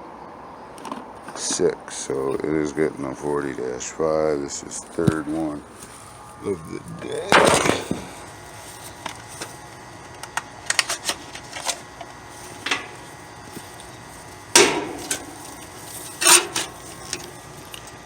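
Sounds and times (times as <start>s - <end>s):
clicks and knocks of tools: 10.2s - 13.9s, 14.6s - 18.0s.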